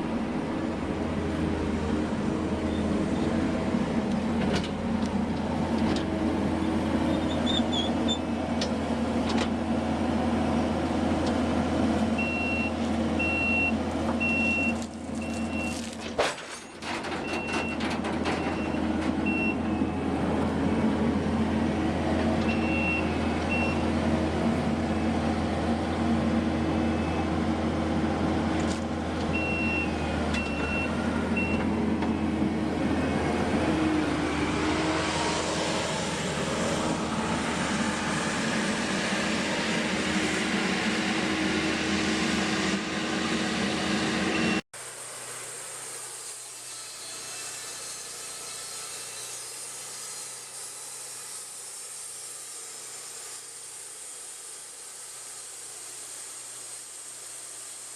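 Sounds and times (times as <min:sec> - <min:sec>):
diesel engine running: 0:00.0 - 0:45.4
backup alarm beeping: 0:12.2 - 0:15.8.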